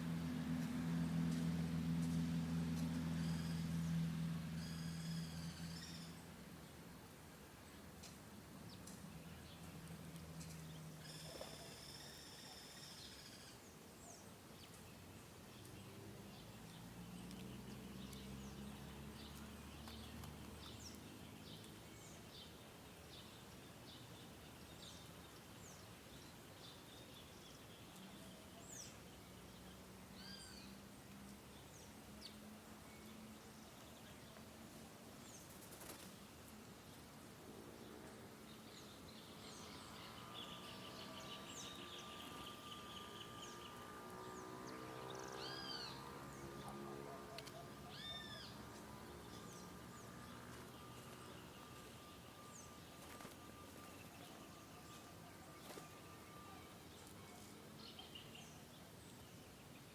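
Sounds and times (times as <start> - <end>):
low steady hum: 0.0 - 59.9
small birds chirping: 7.6 - 37.1, 37.7 - 59.9.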